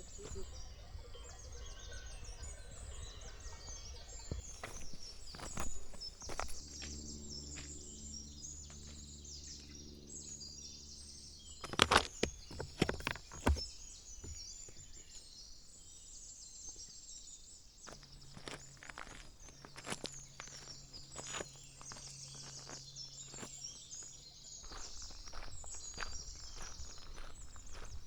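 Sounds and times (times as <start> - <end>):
faint low hum: 0.0 - 28.0
small birds chirping: 0.0 - 28.0.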